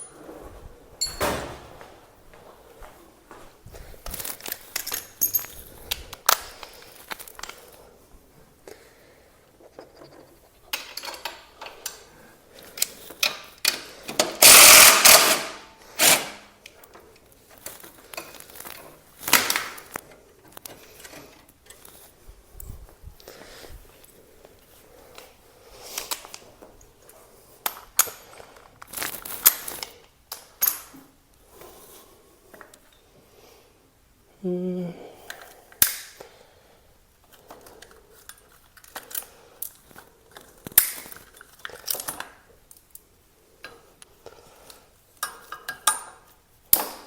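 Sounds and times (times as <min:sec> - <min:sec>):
tools clicking and clinking: 0:01.0 - 0:01.8, 0:04.2 - 0:07.6, 0:09.8 - 0:16.8.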